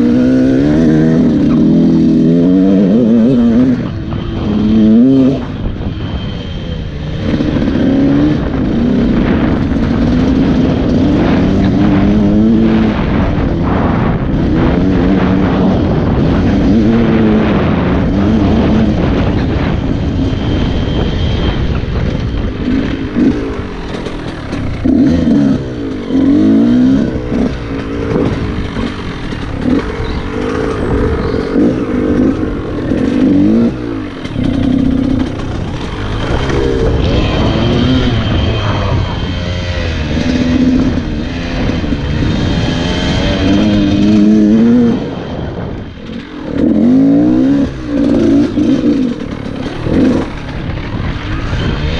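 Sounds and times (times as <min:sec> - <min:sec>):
two-stroke motorcycle engine revving: 0:00.0 - 0:51.9.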